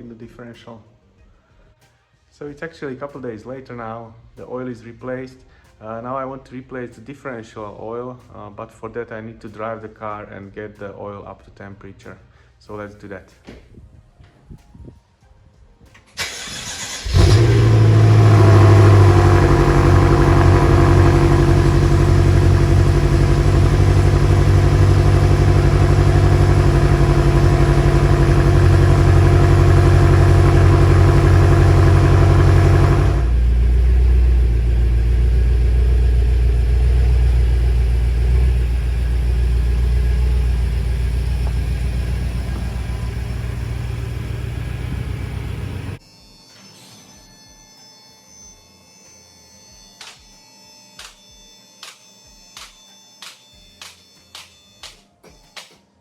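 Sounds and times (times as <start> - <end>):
car engine starting and idling: 16.2 - 46.0.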